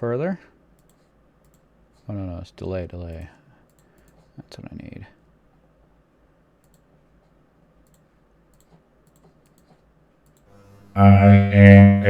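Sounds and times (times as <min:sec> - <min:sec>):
computer mouse and keyboard clicks: 0:00.8 - 0:01.7, 0:03.1 - 0:04.4, 0:06.6 - 0:10.5.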